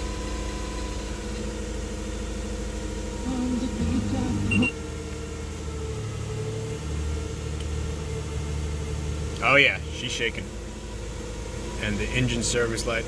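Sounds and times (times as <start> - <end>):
wavering sound: 3.2 - 4.7
engine idling roughly: 9.4 - 13.0.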